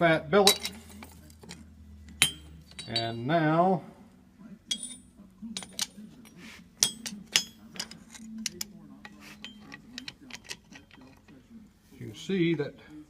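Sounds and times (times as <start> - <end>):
metallic clinks and knocks: 0.4 - 3.3, 4.7 - 11.4.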